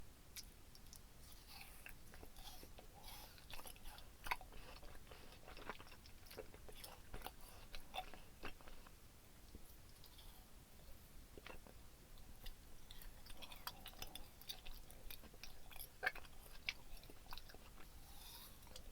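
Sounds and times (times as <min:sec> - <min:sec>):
chewing gummy candy: 0:00.3 - 0:18.9.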